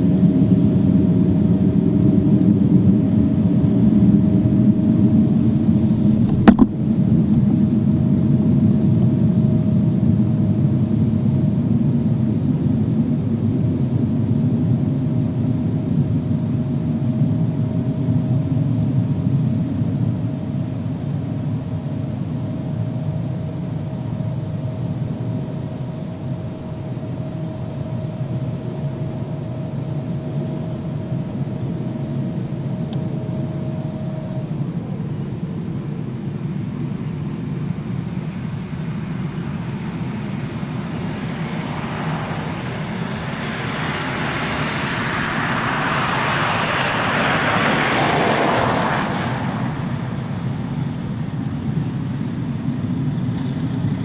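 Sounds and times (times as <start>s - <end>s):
low rumbling drone in sky: 0.0s - 54.0s
rushing noise of passing vehicle: 0.5s - 9.3s, 37.5s - 54.0s
low rumble: 39.3s - 54.0s.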